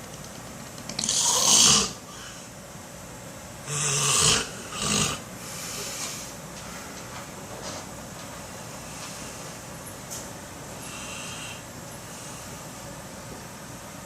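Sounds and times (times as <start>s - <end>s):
man snoring: 1.1s - 2.0s, 3.7s - 5.2s.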